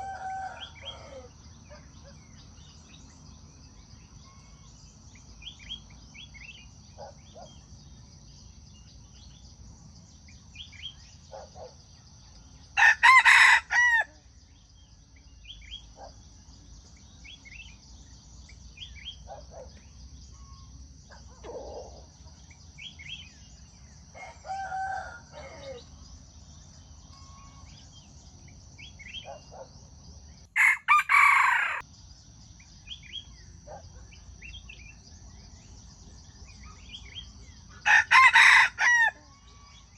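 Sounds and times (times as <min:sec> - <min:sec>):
rooster crowing: 0:00.0 - 0:01.3, 0:12.8 - 0:14.1, 0:24.2 - 0:25.8, 0:30.6 - 0:31.8, 0:37.8 - 0:39.9
steady high-pitched hiss: 0:00.0 - 0:30.8
small birds chirping: 0:00.0 - 0:39.9.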